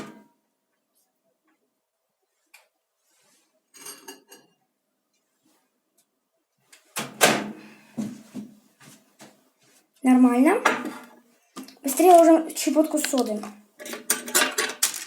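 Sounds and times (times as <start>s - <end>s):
glass dishware clinking: 3.8s - 4.6s.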